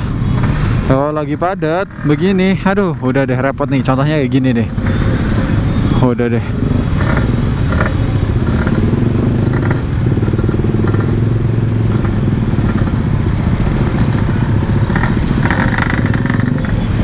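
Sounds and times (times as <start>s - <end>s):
two-stroke motorcycle engine running: 6.6s - 17.0s.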